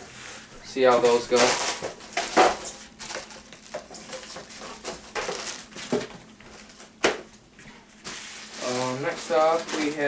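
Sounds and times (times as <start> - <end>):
packaging rustling: 1.1 - 6.8, 8.0 - 10.0.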